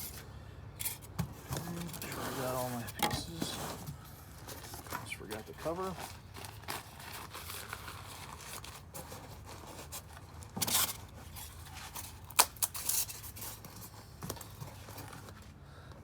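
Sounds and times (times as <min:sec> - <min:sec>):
packing material rustling: 0:01.0 - 0:15.6
crinkling bursts: 0:01.6 - 0:15.6.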